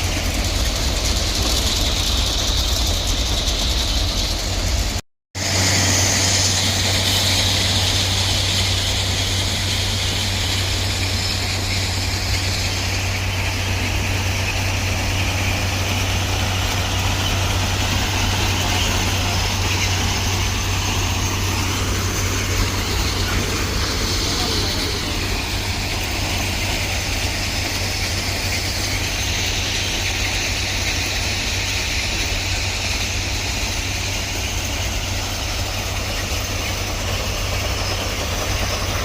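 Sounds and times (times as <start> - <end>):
heavy machine engine humming: 0.0 - 39.0.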